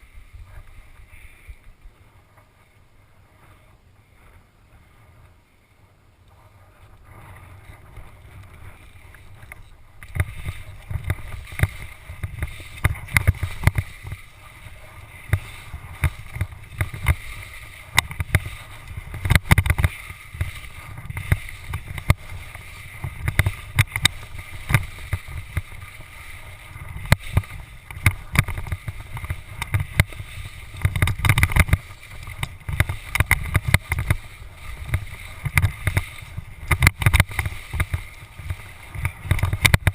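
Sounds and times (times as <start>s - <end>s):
camera rattling in its mount: 27.0s - 34.2s.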